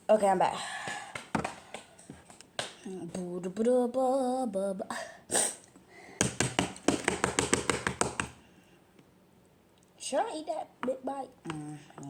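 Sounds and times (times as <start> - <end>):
rapid light taps: 6.2 - 8.4.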